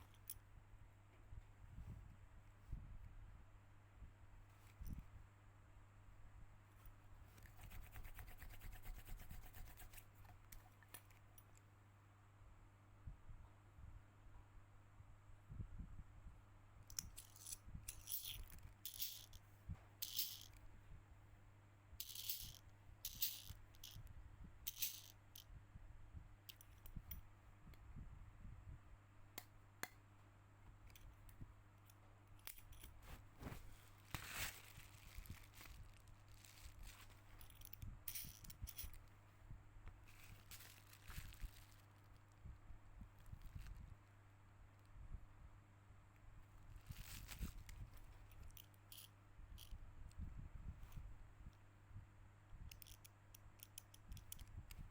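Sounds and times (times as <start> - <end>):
small parts scraping and clicking: 16.9 - 19.4, 20.0 - 20.6, 22.0 - 25.5, 26.5 - 27.2, 30.9 - 39.1, 46.9 - 49.8, 52.7 - 54.9.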